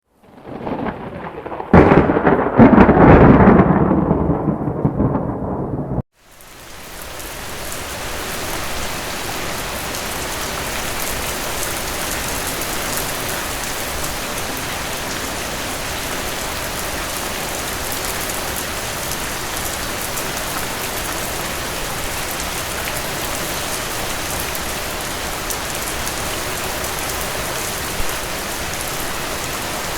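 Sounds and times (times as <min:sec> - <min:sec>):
thunderclap rumbling: 0:00.2 - 0:06.0
steady rain: 0:00.2 - 0:29.9.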